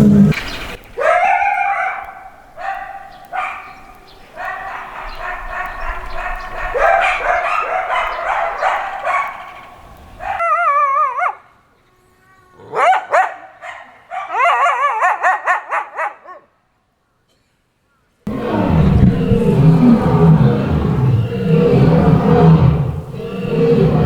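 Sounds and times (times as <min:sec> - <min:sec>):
coyotes howling and yipping: 0:00.0 - 0:11.4, 0:18.3 - 0:24.0.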